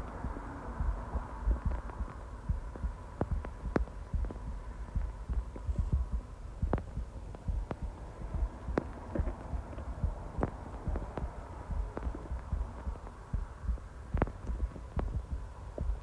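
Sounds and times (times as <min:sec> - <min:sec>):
stomach pops and clicks: 0:01.6 - 0:16.0.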